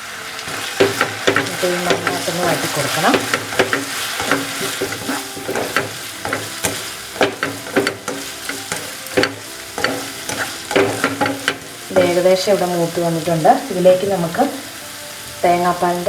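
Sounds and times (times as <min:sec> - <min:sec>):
vegetables sizzling in hot oil: 0:00.0 - 0:16.0
spoon scraping pan: 0:00.5 - 0:13.0.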